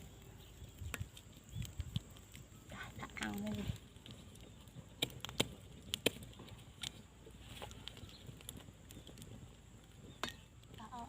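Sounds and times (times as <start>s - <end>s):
faint outdoor background: 0.0s - 11.0s.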